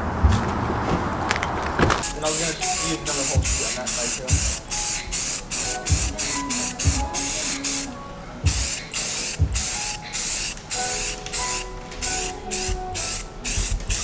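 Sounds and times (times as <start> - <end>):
spray can hissing bursts: 2.0 - 14.0.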